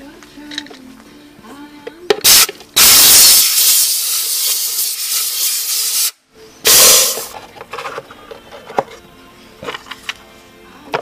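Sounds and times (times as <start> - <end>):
compressed air blow gun hissing: 2.2 - 7.3.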